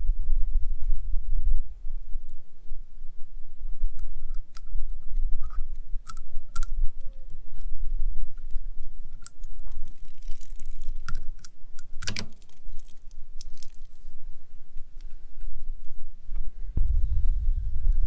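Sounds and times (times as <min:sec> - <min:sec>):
small metal parts clicking: 0:08.4 - 0:13.9
low rumble: 0:16.0 - 0:18.0.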